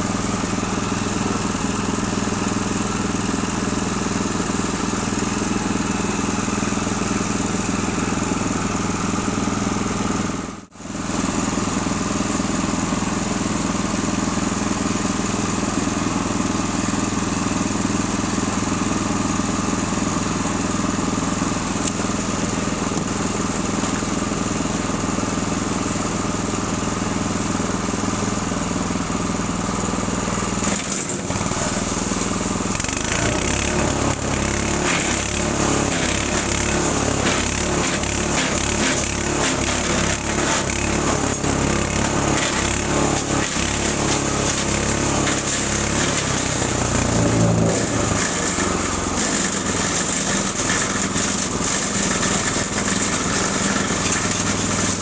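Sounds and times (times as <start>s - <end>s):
wood chipper engine running: 0.0s - 55.0s.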